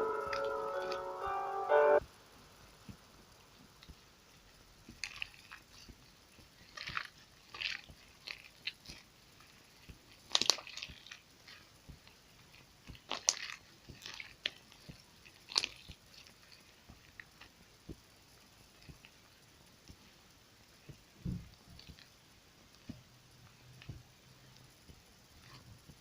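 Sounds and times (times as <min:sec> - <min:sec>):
slime squishing and crackling: 0:04.8 - 0:18.0
slime popping: 0:04.9 - 0:17.1.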